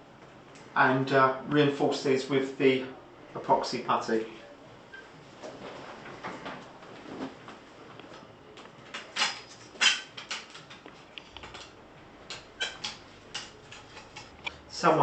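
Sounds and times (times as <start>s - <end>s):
hand tools clicking and scraping: 12.3s - 14.4s.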